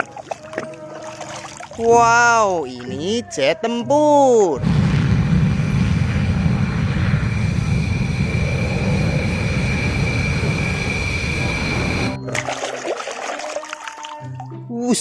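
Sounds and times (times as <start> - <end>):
jet engine rumble and whine: 4.6 - 12.2.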